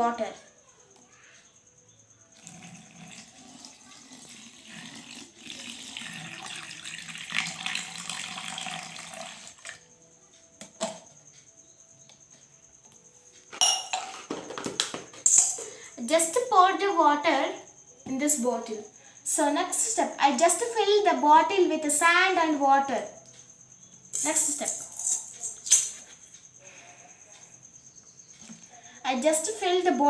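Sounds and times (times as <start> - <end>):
water pouring into bottle: 2.4 - 9.8
knocks and clatter of handling: 13.4 - 15.7.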